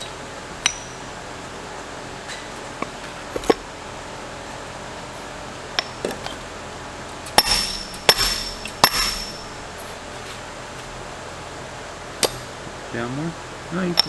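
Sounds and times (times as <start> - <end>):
hammer blows on metal ringing: 7.4 - 9.9.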